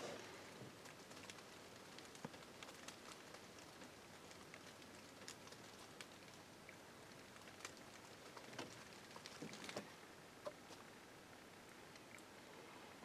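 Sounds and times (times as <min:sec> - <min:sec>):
faint pattering ticks: 0:00.7 - 0:10.9.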